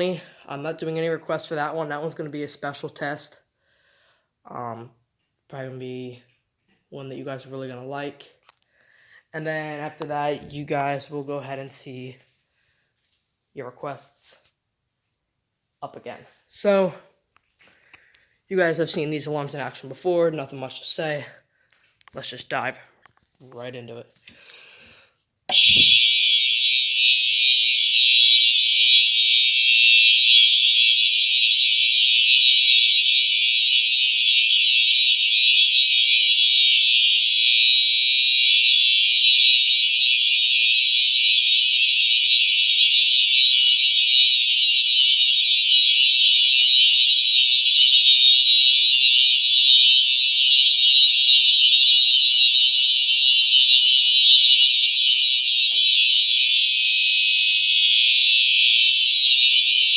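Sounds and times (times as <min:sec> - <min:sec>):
fire alarm horns squealing: 0:25.5 - 0:59.9.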